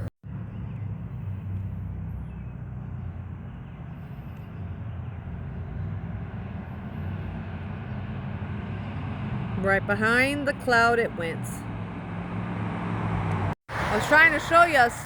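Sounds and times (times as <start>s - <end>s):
low rumble with hum: 0.0s - 10.2s.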